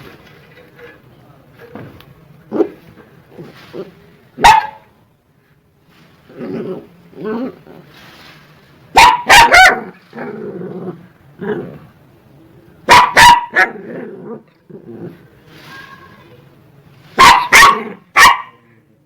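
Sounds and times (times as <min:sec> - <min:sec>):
dogs barking aggressively: 0:04.4 - 0:04.9, 0:08.9 - 0:10.4, 0:12.9 - 0:14.4, 0:17.2 - 0:18.6
dogs growling: 0:06.3 - 0:07.9, 0:09.8 - 0:12.0, 0:13.6 - 0:15.3.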